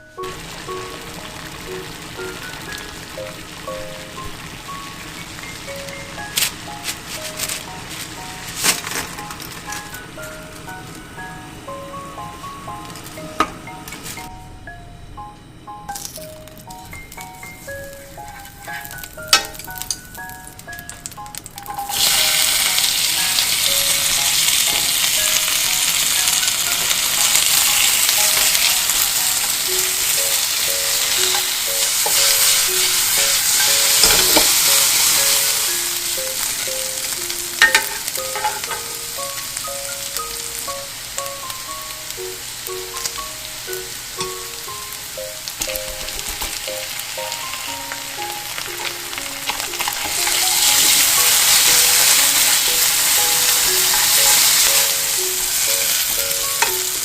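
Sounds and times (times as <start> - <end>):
food sizzling in a pan: 0.0 - 10.6, 16.0 - 57.0
soft background melody: 0.0 - 57.0
utensil knocking on pan: 33.4 - 34.7, 37.6 - 38.9.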